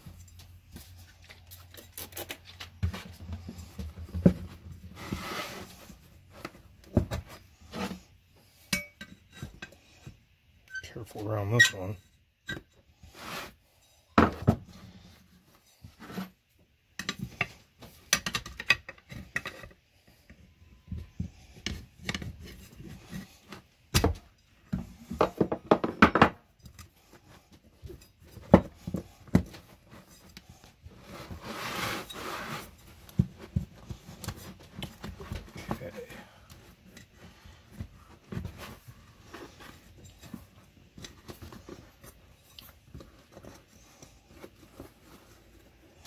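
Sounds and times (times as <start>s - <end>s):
rubber scraping against wheel: 2.1s - 6.5s, 28.7s - 36.4s.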